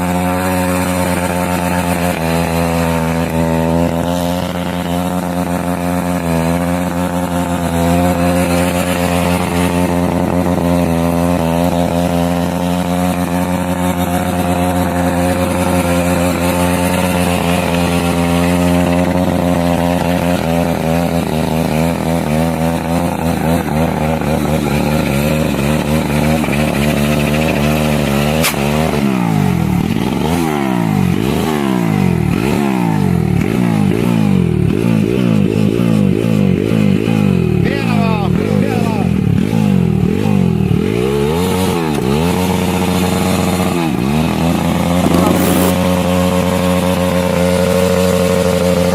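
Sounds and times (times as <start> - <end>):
pit bike engine running: 0.0 - 48.9
sharp click: 28.4 - 28.6.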